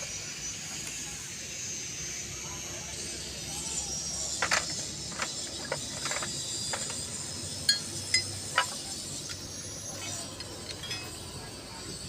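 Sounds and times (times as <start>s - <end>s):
metal tools clinking: 4.4s - 11.5s.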